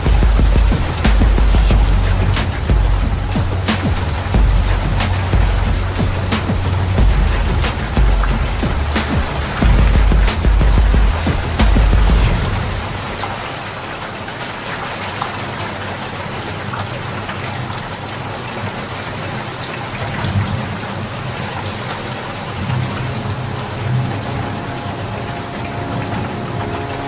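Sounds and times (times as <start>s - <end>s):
low rumbles: 0.0s - 14.0s
steady rain falling: 0.0s - 27.0s.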